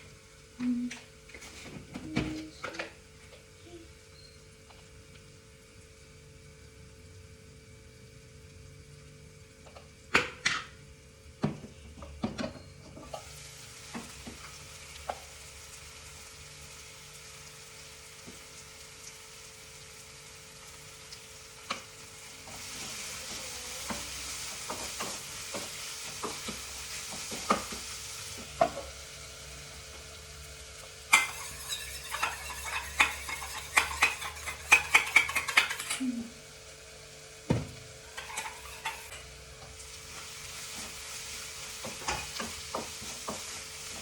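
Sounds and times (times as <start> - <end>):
food sizzling in a pan: 0.0 - 11.4, 13.0 - 44.0
spatula tapping a pan: 22.7 - 27.9, 31.1 - 35.9, 41.8 - 44.0
spatula scraping a pan: 31.1 - 36.0, 38.1 - 39.2.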